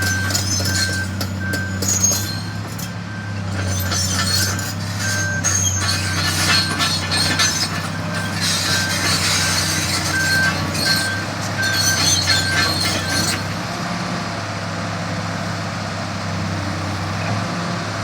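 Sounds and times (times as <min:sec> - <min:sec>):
travel alarm beeping: 0:00.0 - 0:02.6
steel tracks clanking and squealing: 0:00.0 - 0:14.0
excavator diesel engine running: 0:00.0 - 0:18.0.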